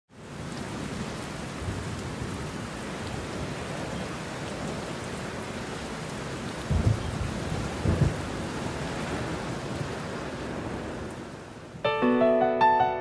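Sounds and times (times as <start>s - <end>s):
steady rain falling: 0.1s - 11.8s
low rumble of thunder: 6.7s - 11.1s.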